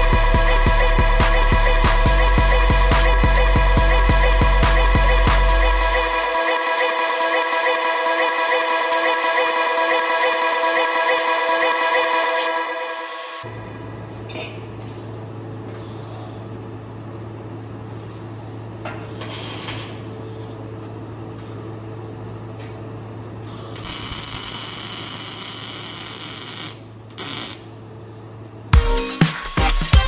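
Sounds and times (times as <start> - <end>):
power tool humming: 0.0 - 13.5.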